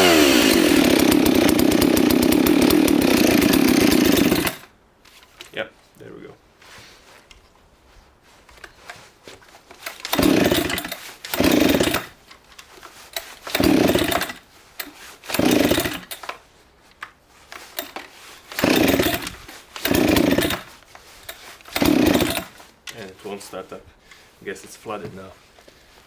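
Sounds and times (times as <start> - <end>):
chainsaw pull-start turning over: 0.0 - 4.7, 9.8 - 12.2, 13.1 - 16.3, 17.6 - 22.8.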